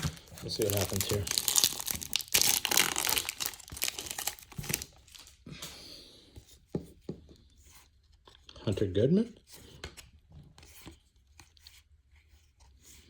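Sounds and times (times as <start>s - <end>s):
cards rustling and clicking: 0.0s - 5.4s
foil wrapper tearing and crinkling: 0.0s - 5.4s.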